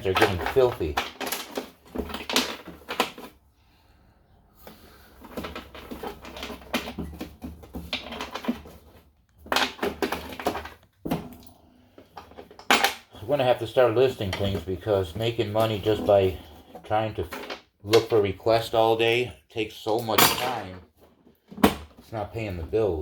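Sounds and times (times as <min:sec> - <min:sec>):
clicks and knocks of metal parts: 0:00.0 - 0:03.4, 0:05.2 - 0:13.1, 0:15.6 - 0:18.2, 0:19.8 - 0:22.1
rustling of bags: 0:04.5 - 0:17.6.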